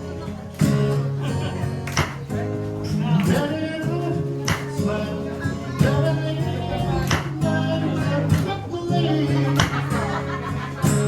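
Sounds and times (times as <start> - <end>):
acoustic guitar strumming: 0.0 - 11.0
person singing: 2.9 - 10.9.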